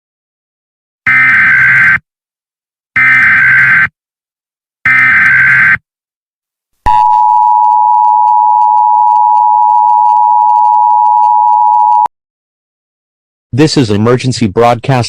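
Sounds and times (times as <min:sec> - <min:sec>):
loud steady two-tone beep: 0:04.9 - 0:05.8, 0:06.9 - 0:12.1.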